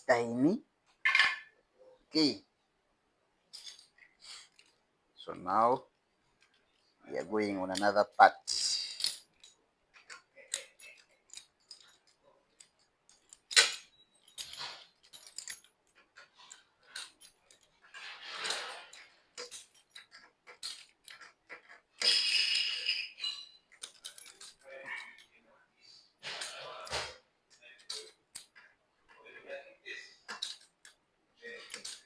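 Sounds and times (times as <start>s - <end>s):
metallic clicks and clinks: 8.6s - 25.4s, 26.2s - 29.2s, 30.3s - 32.0s.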